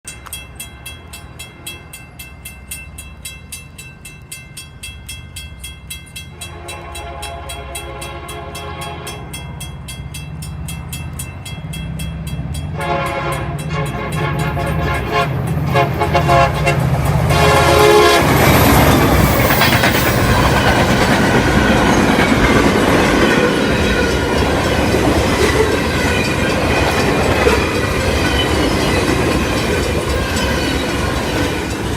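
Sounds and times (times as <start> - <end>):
train wheel and rail noise: 0.1 - 31.9
locomotive engine rumbling: 0.2 - 31.9
train horn blasts: 6.3 - 9.4, 12.7 - 18.6.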